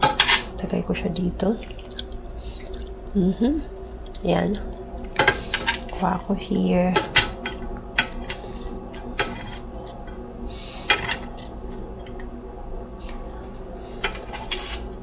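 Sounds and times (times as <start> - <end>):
utensils and dishes clinking: 0.0 - 0.6, 5.0 - 6.1, 6.9 - 8.4, 10.8 - 12.3, 14.0 - 14.8
low hum: 0.0 - 15.0.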